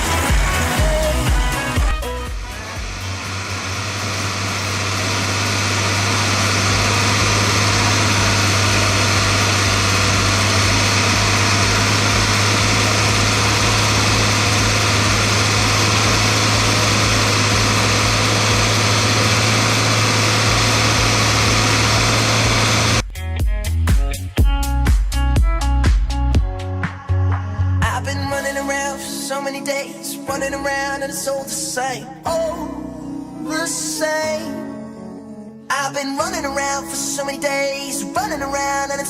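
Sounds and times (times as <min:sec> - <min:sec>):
tractor diesel engine droning: 0:00.0 - 0:23.0.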